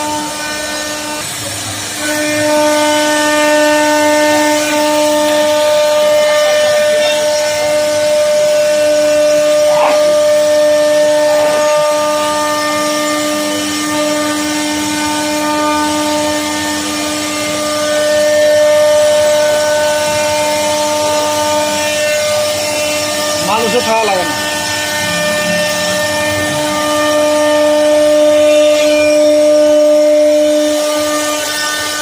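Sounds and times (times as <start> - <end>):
wood router spindle whine: 0.0 - 32.0.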